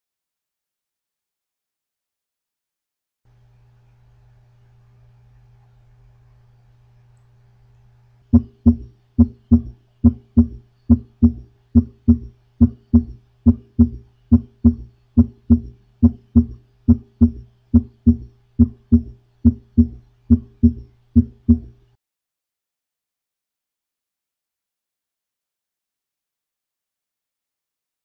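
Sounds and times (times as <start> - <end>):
heartbeat lub-dub: 8.4 - 21.7.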